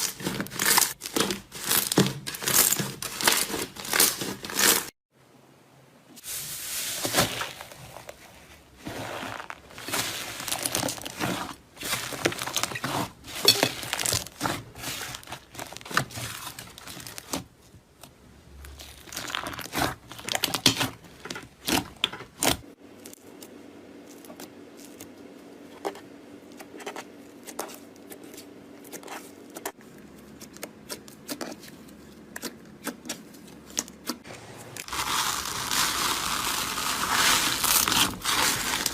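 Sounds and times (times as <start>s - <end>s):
slime tearing squelches: 34.5s - 38.9s.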